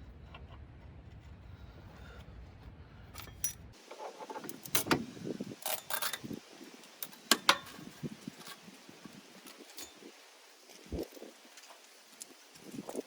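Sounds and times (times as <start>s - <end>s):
metal tools clinking and knocking: 3.2s - 5.0s, 5.6s - 6.4s, 7.0s - 8.7s, 9.4s - 10.8s.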